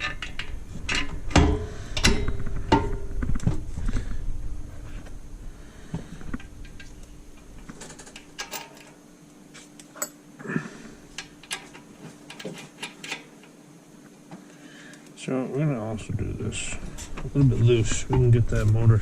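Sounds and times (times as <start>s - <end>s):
faint steady hum: 0.0s - 19.0s
hand tools clicking and clinking: 7.6s - 9.0s, 11.1s - 13.6s.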